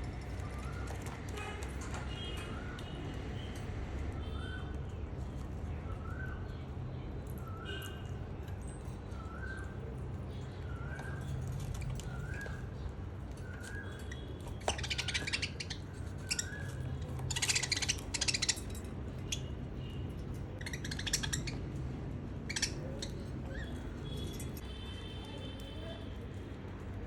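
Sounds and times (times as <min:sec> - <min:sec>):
budgie chirping: 0:13.4 - 0:21.8, 0:22.4 - 0:24.6.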